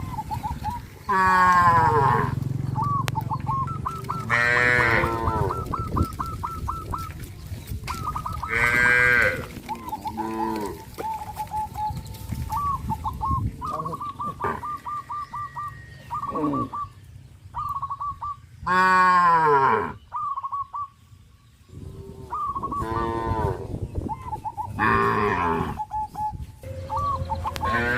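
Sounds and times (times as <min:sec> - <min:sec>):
bird calling repeated notes: 0:00.0 - 0:19.2, 0:19.8 - 0:21.2, 0:22.2 - 0:27.9
cattle mooing: 0:01.1 - 0:03.0, 0:03.9 - 0:05.7, 0:08.5 - 0:11.0, 0:22.0 - 0:23.8, 0:24.8 - 0:25.8, 0:26.7 - 0:27.9.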